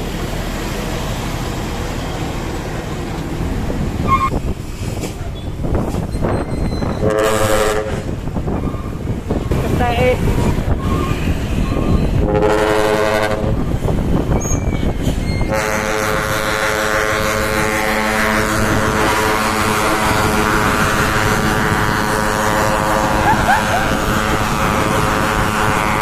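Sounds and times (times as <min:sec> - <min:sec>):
truck air horn blasts: 0:07.0 - 0:08.1, 0:12.2 - 0:13.6, 0:15.5 - 0:26.0.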